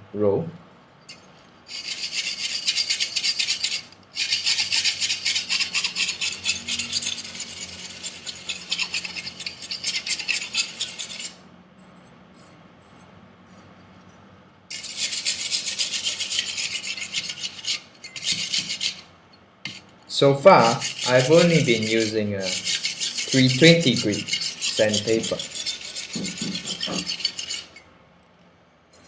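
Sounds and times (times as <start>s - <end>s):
knife scraping on sandpaper: 1.7s - 11.4s, 14.7s - 19.1s, 19.7s - 19.9s, 20.5s - 27.8s.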